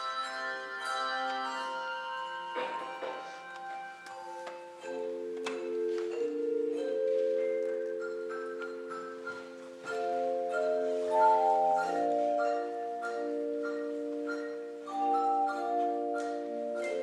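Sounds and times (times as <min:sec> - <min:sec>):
handbell choir ringing chords: 0:00.0 - 0:17.0
high handbell melody notes: 0:00.0 - 0:17.0.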